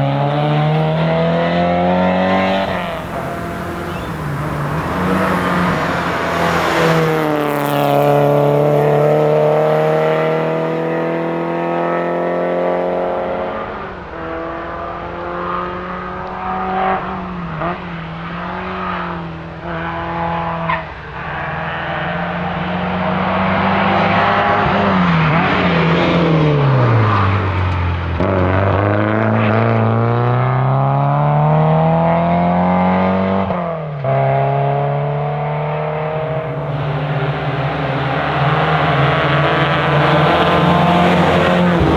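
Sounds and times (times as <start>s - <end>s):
car engine revving hard: 0.0s - 13.6s, 34.2s - 41.9s.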